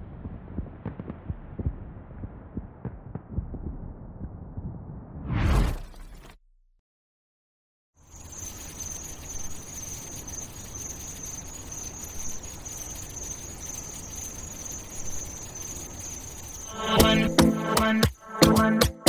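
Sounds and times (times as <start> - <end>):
low rumble: 0.0 - 6.1
shrill high-pitched chirring: 8.0 - 18.7
music: 16.7 - 19.0.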